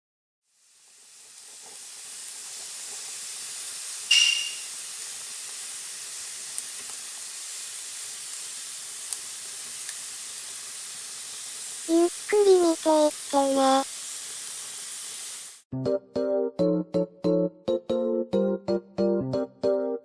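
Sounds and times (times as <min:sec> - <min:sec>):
wood fire hissing and crackling: 0:00.5 - 0:15.7.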